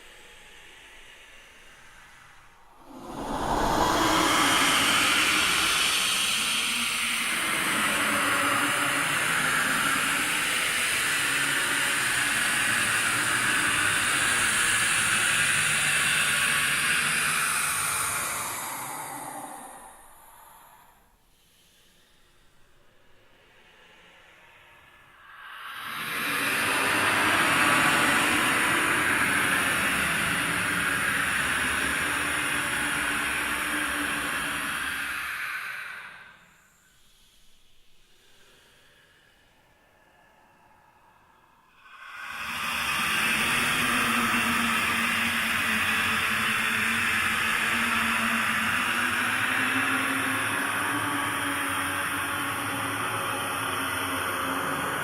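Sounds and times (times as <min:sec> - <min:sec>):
wind-like rushing hiss: 0:00.0 - 0:08.9
long rushing hiss: 0:00.0 - 0:41.0.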